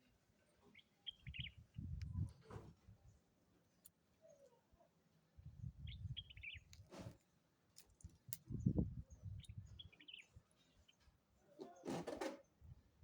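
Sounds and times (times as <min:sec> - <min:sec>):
bird chirping: 0:00.7 - 0:01.6, 0:05.8 - 0:06.7.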